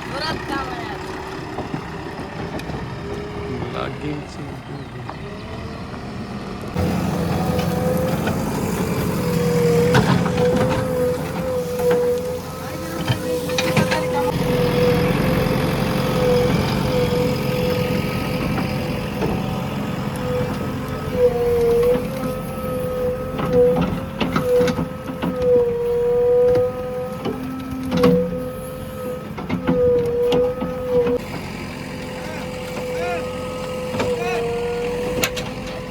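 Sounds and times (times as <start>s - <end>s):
diesel engine running: 0.0s - 35.9s
engine whine: 0.0s - 35.9s
knocks and clanks: 1.1s - 3.4s, 6.8s - 14.9s, 16.2s - 31.5s.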